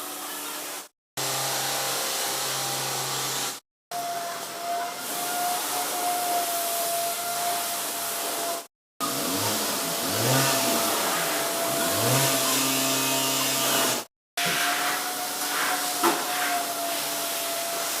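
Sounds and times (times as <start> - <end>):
vehicle engine revving: 9.0 - 14.1.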